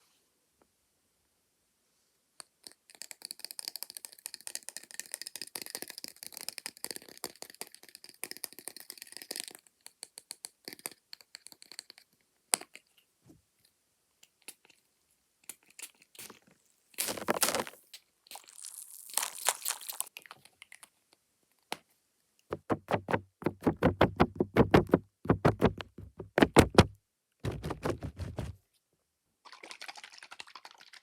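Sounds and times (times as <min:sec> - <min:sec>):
makeup tools tapping and clicking: 0:22.5 - 0:26.9.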